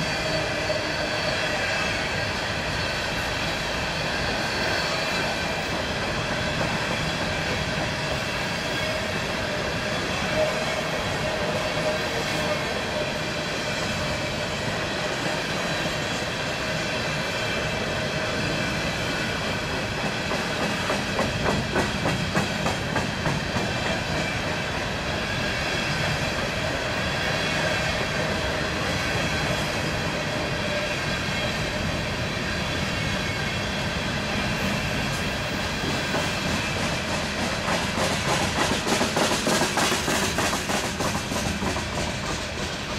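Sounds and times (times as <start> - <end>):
train wheels rumbling on rail: 0.0 - 42.9.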